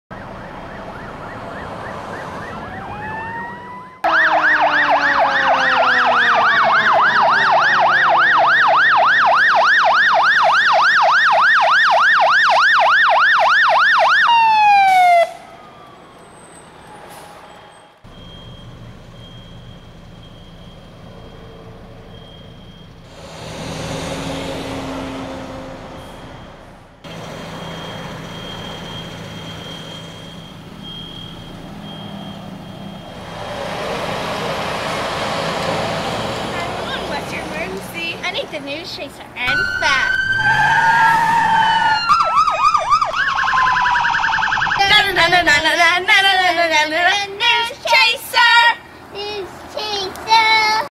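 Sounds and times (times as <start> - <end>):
fast yelp siren: 0.1 - 16.2, 39.5 - 45.8
wailing siren: 0.1 - 18.6, 24.2 - 36.0, 39.5 - 46.4.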